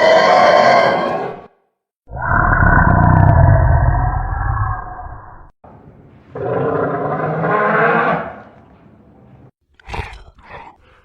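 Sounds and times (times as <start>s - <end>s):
dinosaur roar: 0.0s - 1.5s, 2.1s - 5.5s, 6.3s - 8.4s.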